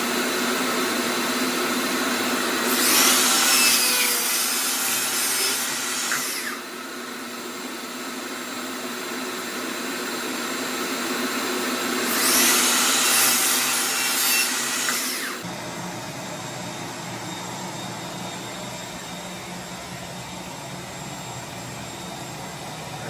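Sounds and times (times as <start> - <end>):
electric saw running: 2.1 - 7.0, 10.4 - 15.5
saw cutting wood: 2.6 - 6.7, 12.0 - 15.5.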